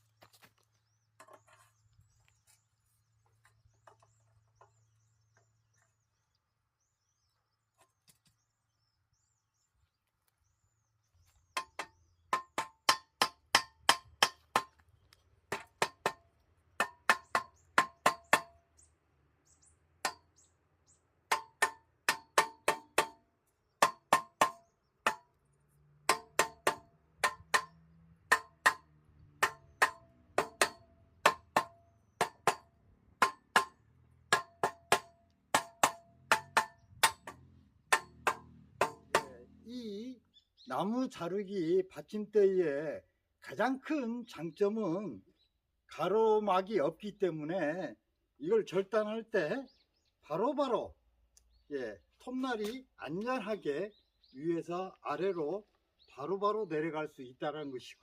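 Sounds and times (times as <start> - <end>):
metallic knocks on steel pipe: 21.3 - 23.2, 26.1 - 39.4.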